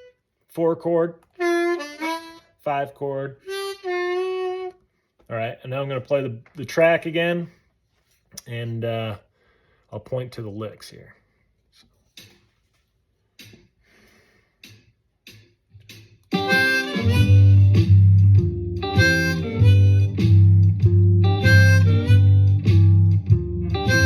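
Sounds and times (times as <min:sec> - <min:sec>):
harmonica playing: 0:00.0 - 0:00.2, 0:01.4 - 0:02.8, 0:03.4 - 0:04.8, 0:16.3 - 0:24.0
blues backing track with guitar: 0:16.3 - 0:24.0.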